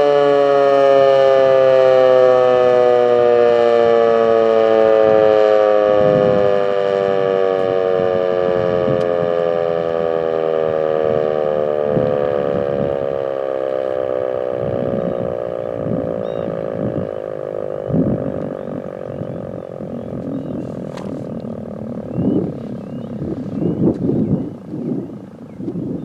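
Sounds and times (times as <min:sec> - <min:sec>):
warning siren winding down: 0:00.0 - 0:26.0
faint low rumbles: 0:06.0 - 0:26.0.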